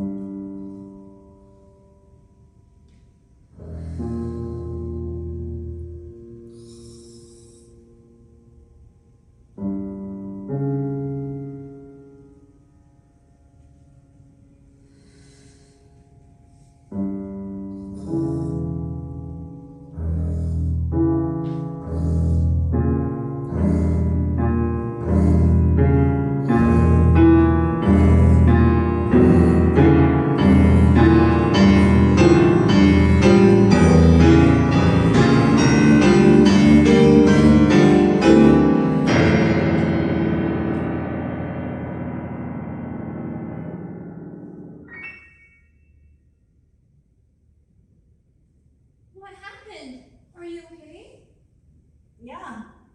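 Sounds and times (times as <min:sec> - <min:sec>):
piano chords: 0:00.0 - 0:46.8.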